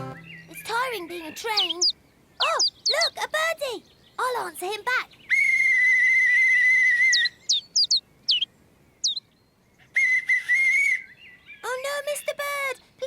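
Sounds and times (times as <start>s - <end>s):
short bird chirps: 7.0s - 9.2s
pea whistle trilling blast: 10.0s - 11.1s.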